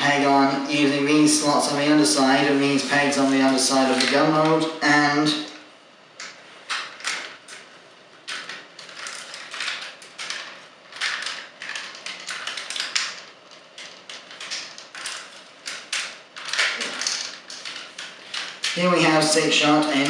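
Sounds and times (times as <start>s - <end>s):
plastic toy parts clicking: 8.3s - 18.8s.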